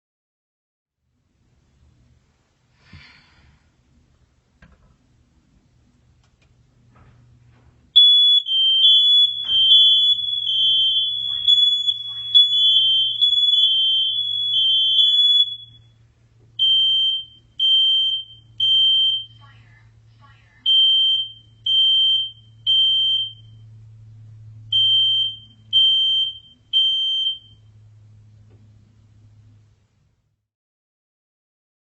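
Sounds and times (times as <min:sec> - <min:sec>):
faint low hum: 0:01.1 - 0:30.4
smoke alarm high-pitched tone: 0:08.0 - 0:16.0, 0:16.6 - 0:19.5, 0:20.6 - 0:23.6, 0:24.7 - 0:27.7.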